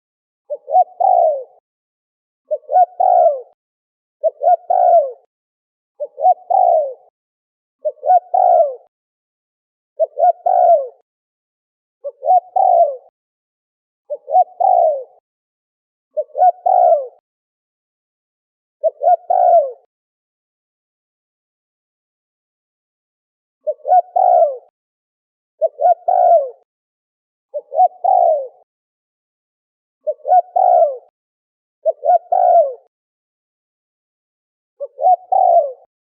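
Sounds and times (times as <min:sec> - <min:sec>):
dove cooing: 0:00.5 - 0:01.6, 0:02.5 - 0:03.6, 0:04.2 - 0:05.3, 0:06.0 - 0:07.1, 0:07.8 - 0:08.9, 0:10.0 - 0:11.0, 0:12.0 - 0:13.1, 0:14.1 - 0:15.2, 0:16.2 - 0:17.2, 0:18.8 - 0:19.9, 0:23.6 - 0:24.7, 0:25.6 - 0:26.7, 0:27.5 - 0:28.6, 0:30.0 - 0:31.1, 0:31.8 - 0:32.9, 0:34.8 - 0:35.9.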